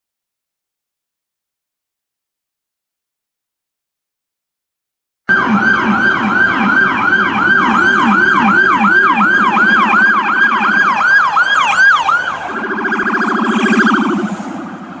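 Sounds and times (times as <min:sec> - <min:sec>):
electronic siren wailing and warbling: 0:05.3 - 0:15.0.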